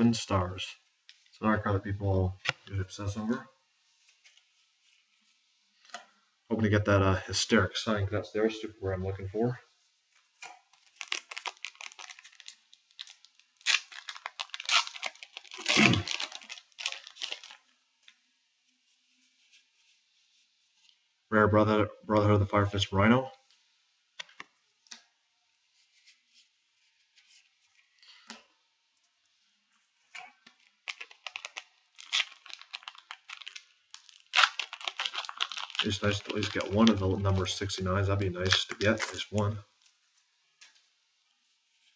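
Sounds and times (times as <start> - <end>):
foil pack tearing and crinkling: 10.7 - 17.7, 30.6 - 37.6.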